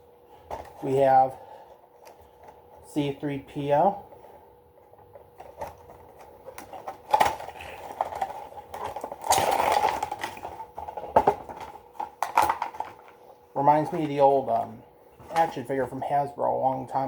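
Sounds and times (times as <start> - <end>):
packaging rustling: 5.0 - 14.4.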